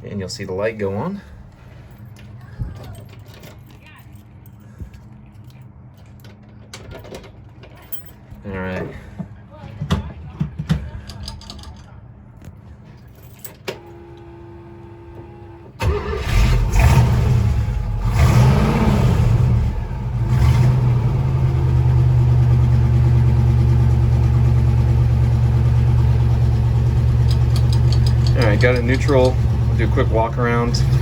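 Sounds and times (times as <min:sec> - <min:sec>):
engine starting and idling: 0:13.6 - 0:31.0.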